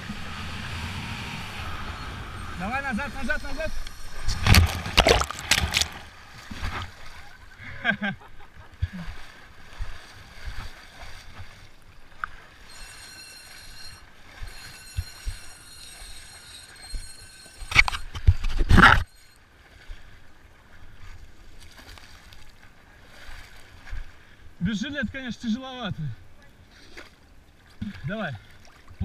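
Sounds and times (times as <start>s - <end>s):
loud noisy rush: 0.0s - 6.0s
water sloshing and gurgling: 0.0s - 25.3s, 25.9s - 29.0s.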